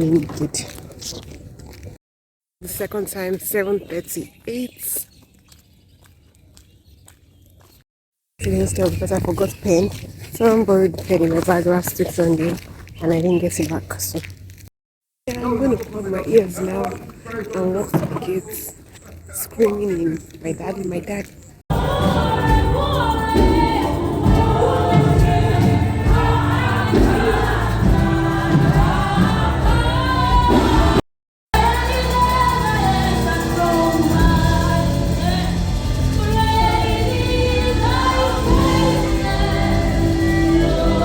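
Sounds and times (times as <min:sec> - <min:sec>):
gospel choir singing: 0:21.7 - 0:31.0, 0:31.6 - 0:41.0.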